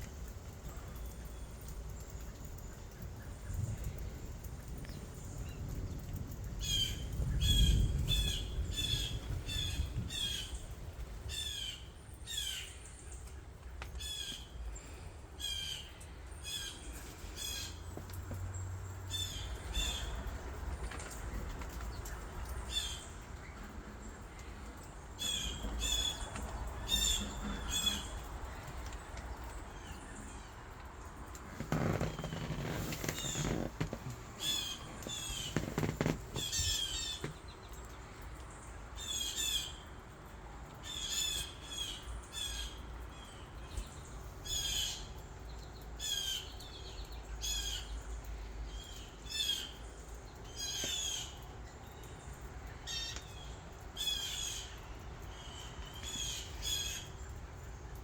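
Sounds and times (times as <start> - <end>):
birds chirping: 0.0 - 58.0.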